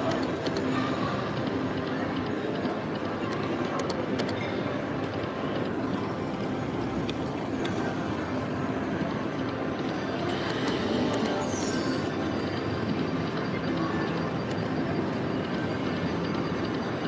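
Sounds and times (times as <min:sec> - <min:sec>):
crowd noise: 0:00.0 - 0:17.0
slot machine sounds: 0:09.9 - 0:17.0.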